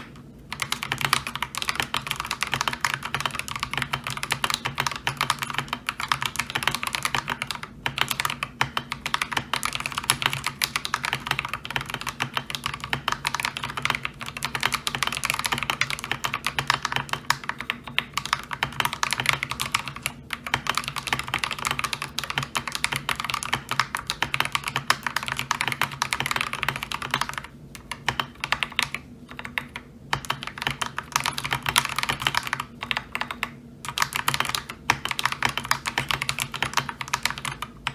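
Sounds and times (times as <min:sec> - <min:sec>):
fast mechanical keyboard typing: 0:00.0 - 0:37.9.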